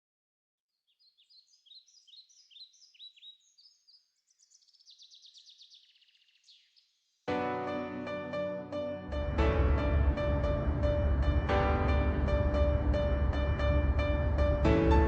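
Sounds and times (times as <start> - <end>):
bird chirps sliding downward: 0.9 - 6.8.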